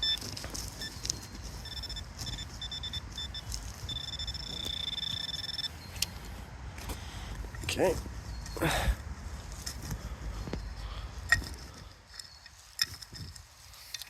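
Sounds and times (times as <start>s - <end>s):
metal detector high-pitched beeps: 0.0s - 6.2s
metal detector steady tone: 0.0s - 6.5s, 10.5s - 14.0s.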